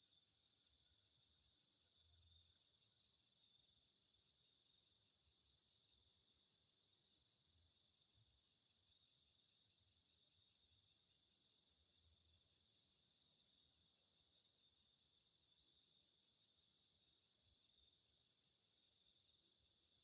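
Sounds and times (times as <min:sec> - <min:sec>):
crickets trilling: 0:15.6 - 0:20.0.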